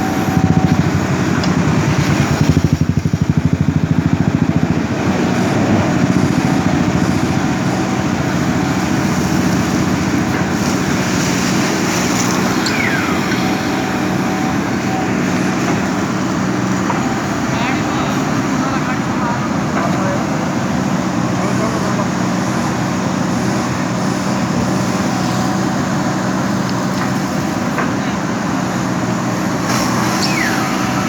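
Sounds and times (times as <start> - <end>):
diesel engine running: 0.0 - 31.0
high squeak: 12.4 - 14.1.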